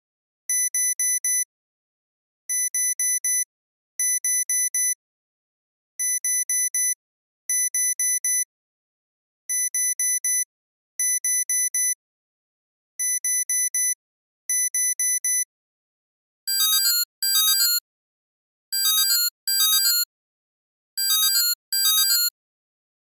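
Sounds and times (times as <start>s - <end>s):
electronic alarm beeping: 16.5s - 17.8s, 18.8s - 20.1s, 21.0s - 22.3s.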